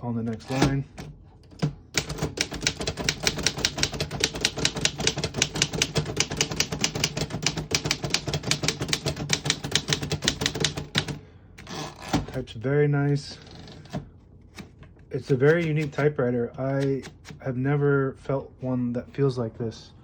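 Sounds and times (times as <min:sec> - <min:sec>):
typewriter keystrokes: 0:01.6 - 0:11.2.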